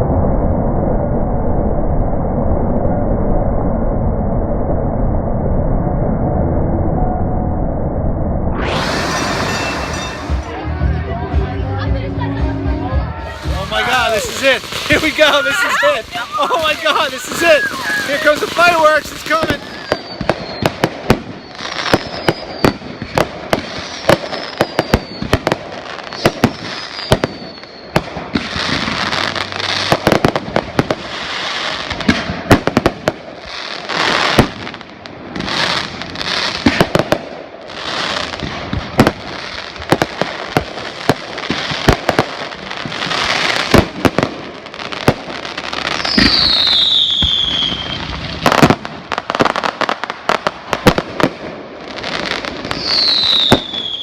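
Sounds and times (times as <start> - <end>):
falling firework whistles: 8.5 - 10.5, 13.3 - 37.1, 37.7 - 49.8, 52.0 - 54.0
hissing crackling firework bursts: 8.6 - 10.5, 13.1 - 54.0
firework bangs: 8.6 - 10.7, 13.1 - 54.0.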